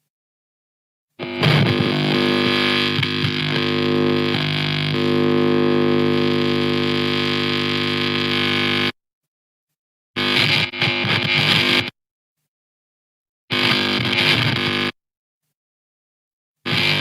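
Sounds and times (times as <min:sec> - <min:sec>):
distorted electric guitar chord: 0:01.2 - 0:08.9.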